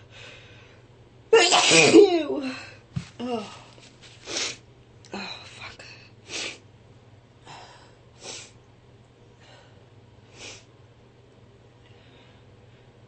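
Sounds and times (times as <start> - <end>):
steady low hum: 0.0 - 13.0
woman sniffing and snorting: 4.2 - 4.6.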